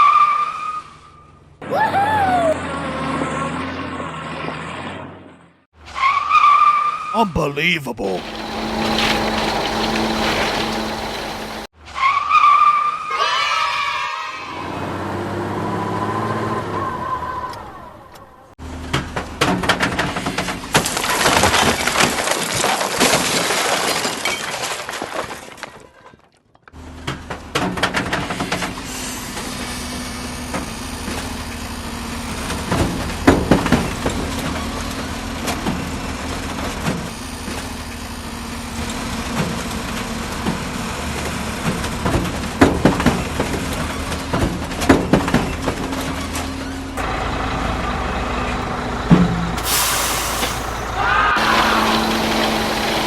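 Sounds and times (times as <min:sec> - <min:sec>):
construction machinery engine hum: 0:07.3 - 0:11.7, 0:28.3 - 0:53.0.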